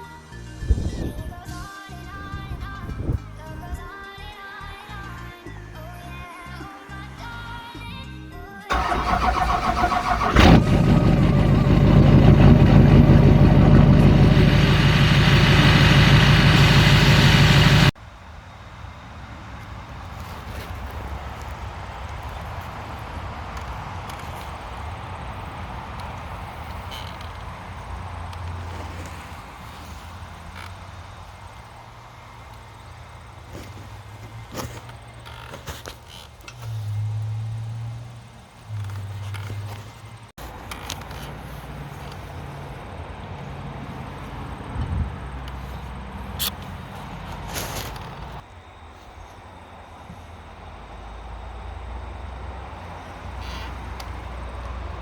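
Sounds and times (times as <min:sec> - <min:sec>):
mower engine running: 0:08.7 - 0:18.0, 0:40.4 - 0:48.4
riding mower engine cranking: 0:08.7 - 0:18.0, 0:21.4 - 0:38.2, 0:38.8 - 0:48.4.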